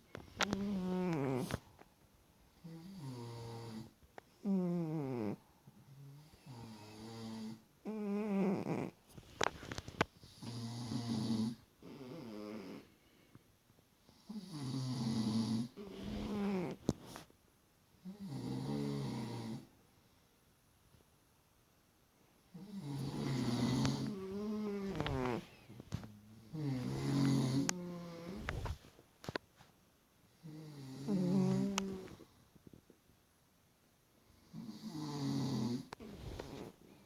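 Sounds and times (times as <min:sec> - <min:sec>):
snoring: 0:00.4 - 0:01.6, 0:02.6 - 0:09.0, 0:10.3 - 0:12.9, 0:14.1 - 0:16.9, 0:18.0 - 0:19.7, 0:22.5 - 0:25.8, 0:26.4 - 0:28.8, 0:30.4 - 0:32.3, 0:34.4 - 0:36.8.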